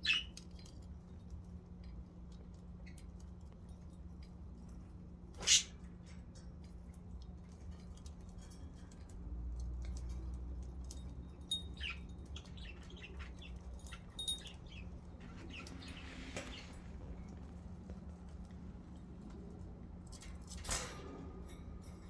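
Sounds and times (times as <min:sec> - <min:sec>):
budgerigars chirping: 0:00.0 - 0:00.3.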